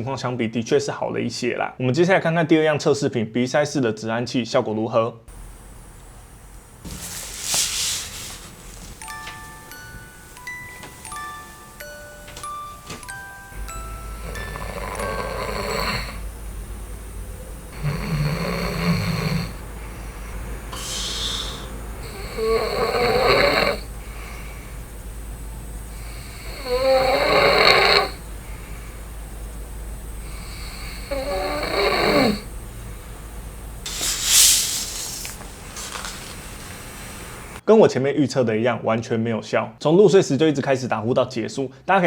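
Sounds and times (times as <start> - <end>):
steady low hum: 5.3 - 37.6
man snoring: 13.7 - 16.4, 17.7 - 24.9, 25.9 - 29.0, 30.2 - 32.5.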